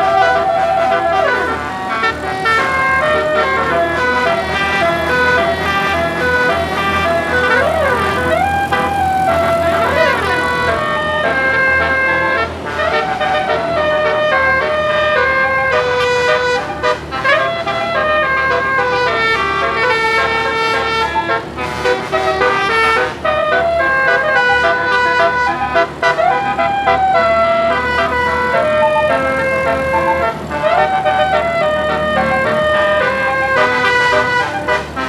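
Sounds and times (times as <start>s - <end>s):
musical air horn tune: 0.0s - 35.0s.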